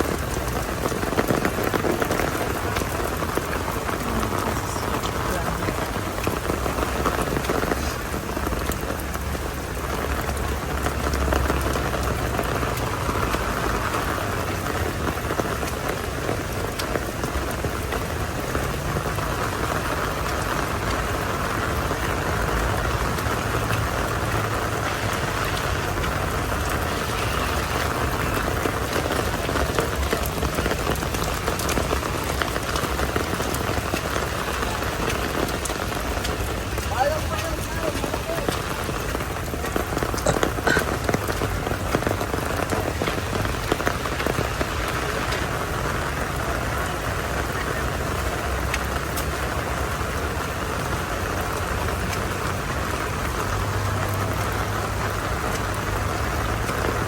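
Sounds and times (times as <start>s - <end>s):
heavy rain hissing: 0.0s - 57.0s.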